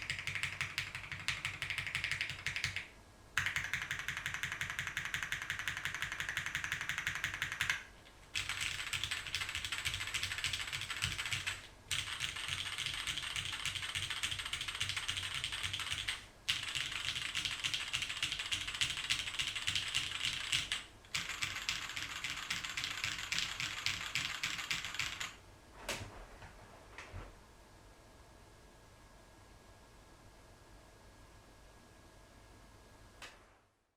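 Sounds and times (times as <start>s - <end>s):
typing on mechanical keyboard: 0.0s - 25.4s.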